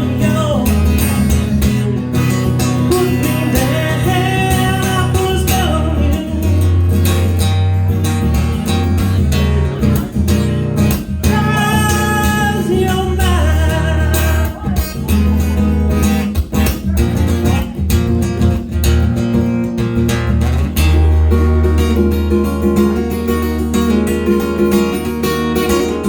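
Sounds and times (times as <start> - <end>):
person singing: 0.0 - 6.9, 11.0 - 15.7
deep bass notes: 0.0 - 26.0
strummed guitar: 0.0 - 26.0.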